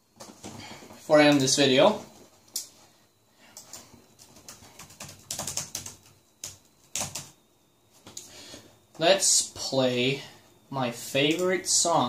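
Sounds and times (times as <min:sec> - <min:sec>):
computer keyboard typing: 0:03.6 - 0:07.4.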